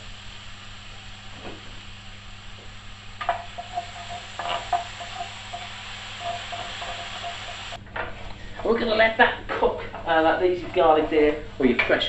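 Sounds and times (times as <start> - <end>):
garlic sizzling in a pan: 0.0 - 7.8
utensil scraping a pan: 3.2 - 7.8.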